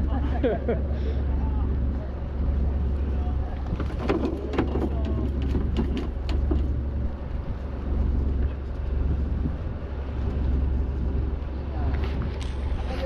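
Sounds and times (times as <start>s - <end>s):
boat engine humming: 0.0s - 13.0s
knocks and clatter on deck: 3.6s - 6.8s.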